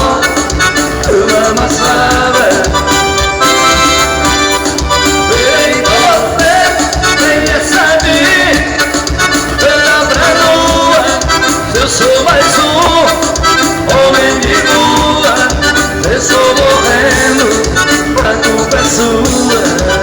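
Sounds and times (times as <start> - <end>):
person singing: 0.0 - 3.6, 5.0 - 20.0
accordion band music: 0.0 - 20.0.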